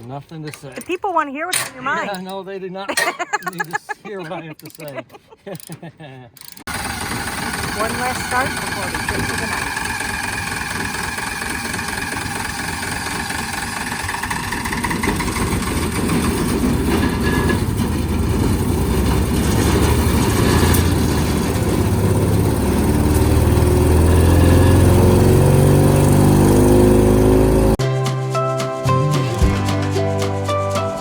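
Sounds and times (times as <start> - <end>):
wood chipper engine running: 6.7 - 27.8.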